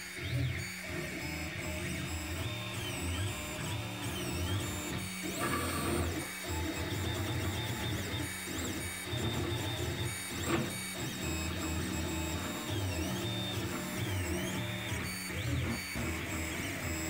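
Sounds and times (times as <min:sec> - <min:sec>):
three d printer stepper motors whining: 0:00.0 - 0:17.0.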